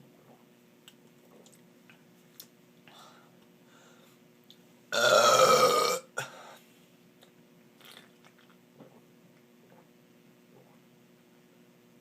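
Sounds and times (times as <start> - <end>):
man burping: 4.9 - 6.3.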